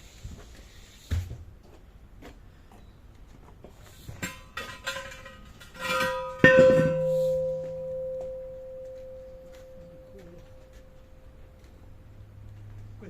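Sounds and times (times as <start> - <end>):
ringing strike on metal: 5.8 - 11.6.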